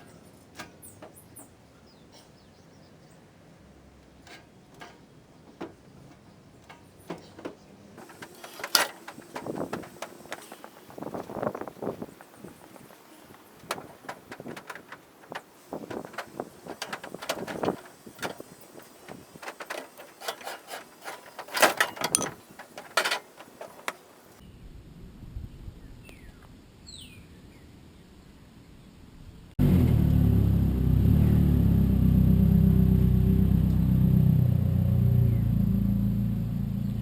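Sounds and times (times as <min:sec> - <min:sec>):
car driving rumble: 0:00.0 - 0:24.4, 0:29.6 - 0:37.0
birds chirping: 0:00.0 - 0:24.5, 0:25.8 - 0:29.0
scattered clicks and knocks: 0:04.0 - 0:24.4.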